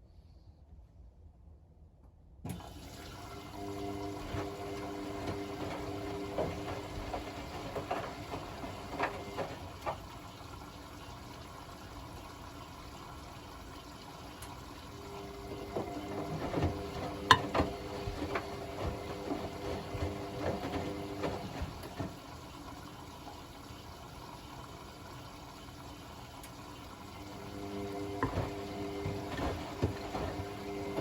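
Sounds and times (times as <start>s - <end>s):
washing machine motor hum: 2.5s - 31.0s
water and laundry sloshing: 2.5s - 31.0s.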